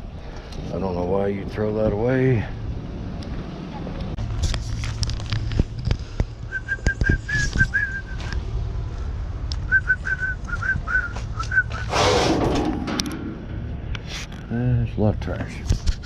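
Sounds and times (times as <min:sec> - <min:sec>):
short whistled notes: 0:06.5 - 0:08.3, 0:09.7 - 0:12.0
clicks and knocks: 0:12.2 - 0:14.0.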